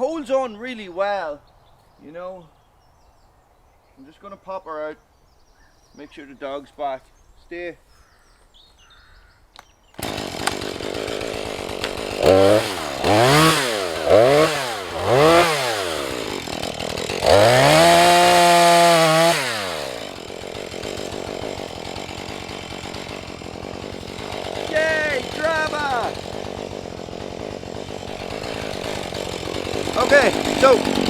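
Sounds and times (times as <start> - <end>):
chainsaw idling and revving: 10.0 - 31.0.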